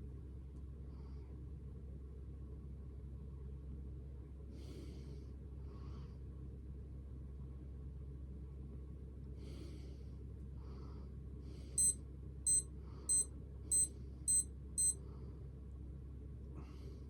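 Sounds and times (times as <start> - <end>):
digital watch beeping: 11.8 - 15.0.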